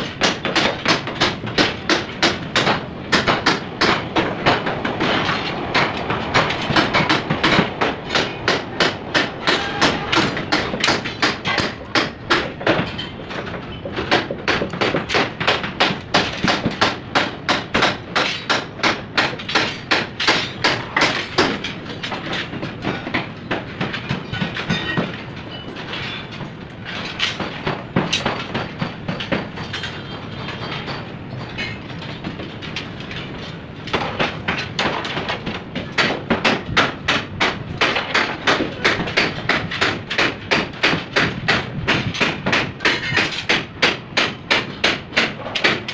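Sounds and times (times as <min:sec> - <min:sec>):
hand hammer blows: 0:00.2 - 0:12.8.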